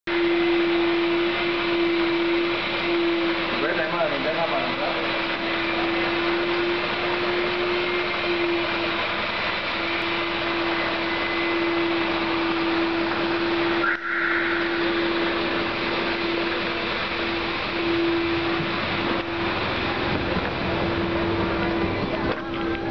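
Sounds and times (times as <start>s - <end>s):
car engine running with whine: 0.0s - 22.9s
belt squeal: 9.8s - 16.8s.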